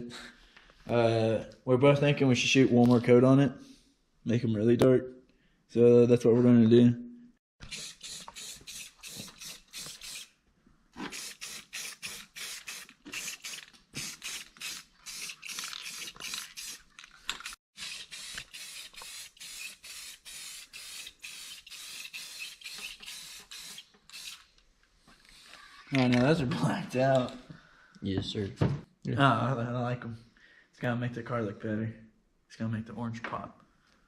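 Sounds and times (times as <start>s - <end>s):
spray can hissing bursts: 7.7s - 10.3s, 11.1s - 16.9s, 17.8s - 24.4s.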